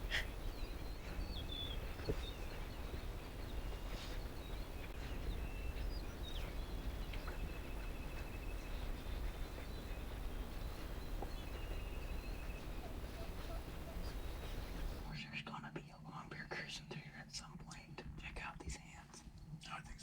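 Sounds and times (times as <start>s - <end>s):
steady low rumble: 0.0s - 15.3s
small birds chirping: 0.0s - 20.0s.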